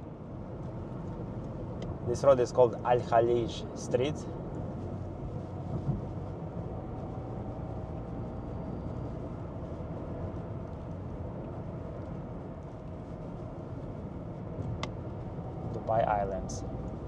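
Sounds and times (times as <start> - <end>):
car road noise: 0.0 - 17.0.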